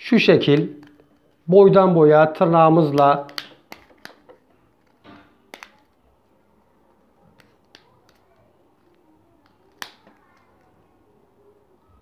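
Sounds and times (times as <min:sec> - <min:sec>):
plastic clips clicking loose: 0:02.9 - 0:04.4.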